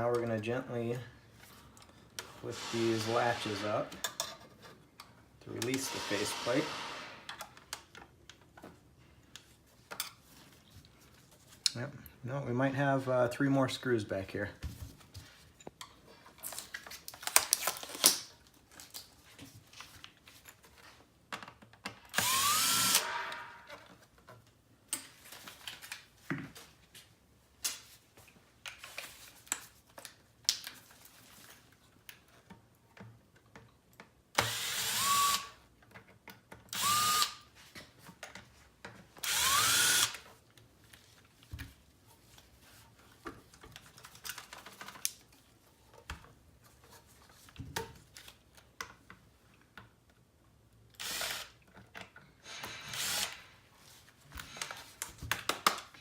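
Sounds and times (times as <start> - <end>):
power screwdriver whining: 22.1 - 23.6, 34.4 - 35.6, 36.7 - 37.4, 39.2 - 40.2, 51.0 - 51.6, 52.5 - 53.5.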